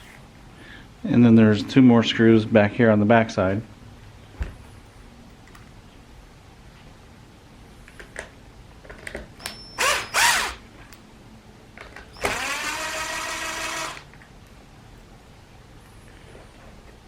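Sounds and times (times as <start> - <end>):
power drill spinning: 9.4 - 10.6, 12.1 - 14.1.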